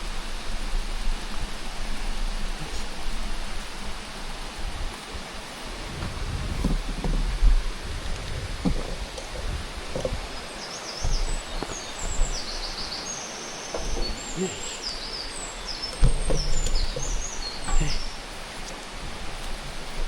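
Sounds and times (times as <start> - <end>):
low rumbling: 0.0 - 20.0
songbird chirping and trilling: 9.9 - 18.8
knocks: 13.7 - 14.4.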